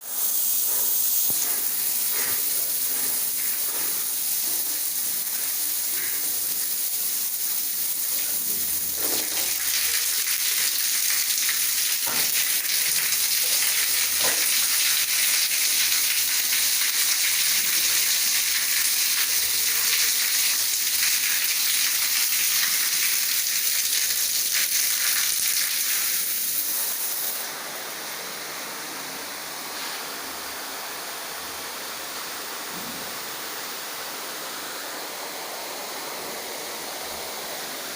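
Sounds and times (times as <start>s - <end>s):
shower water spraying: 0.0s - 28.0s.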